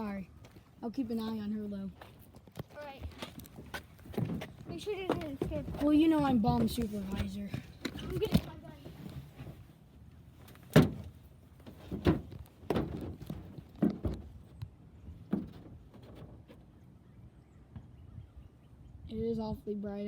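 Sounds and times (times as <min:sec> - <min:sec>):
knocks and thumps: 0:04.1 - 0:08.5, 0:10.7 - 0:14.5, 0:15.2 - 0:16.6.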